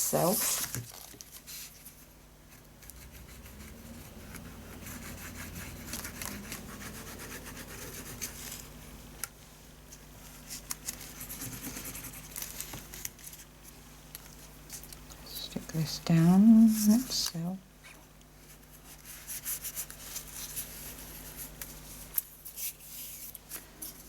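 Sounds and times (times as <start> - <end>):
small paper crackles: 0.4 - 1.8.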